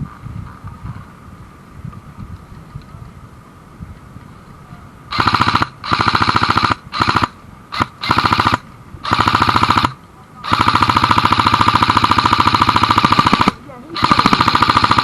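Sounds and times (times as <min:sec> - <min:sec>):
airsoft gun automatic bursts: 0:05.1 - 0:15.0.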